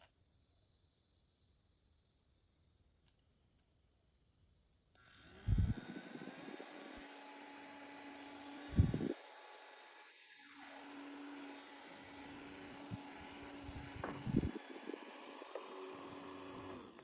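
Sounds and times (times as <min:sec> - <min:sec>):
handheld fan motor whirring: 0:05.0 - 0:17.0
dull handling thumps: 0:13.6 - 0:14.7.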